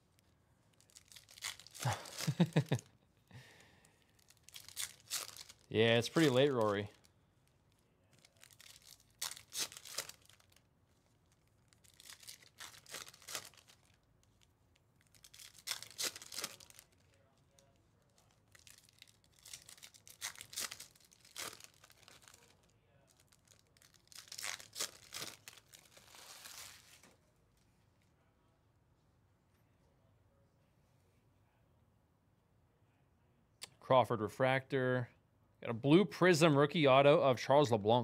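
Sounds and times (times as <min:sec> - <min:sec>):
foil wrappers tearing and crinkling: 0:00.7 - 0:02.8, 0:04.2 - 0:07.0, 0:08.1 - 0:10.6, 0:11.3 - 0:27.1.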